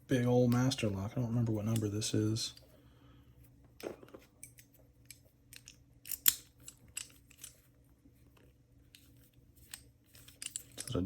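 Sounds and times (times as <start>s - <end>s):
padlock metallic clicks: 4.4s - 7.5s.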